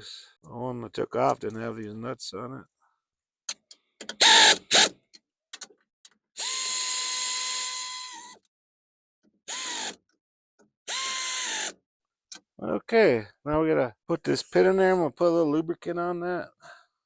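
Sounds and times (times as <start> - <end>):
power drill whirring: 4.2 - 4.9, 6.4 - 8.4, 9.5 - 10.0, 10.9 - 11.8.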